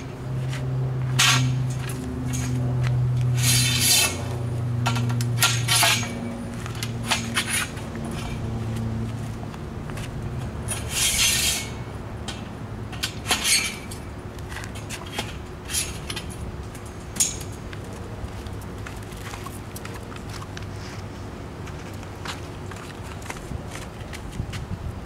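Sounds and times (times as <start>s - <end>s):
steady low hum: 0.0s - 25.0s
metal parts clinking and scraping: 1.2s - 2.6s, 3.3s - 8.5s, 10.7s - 17.6s.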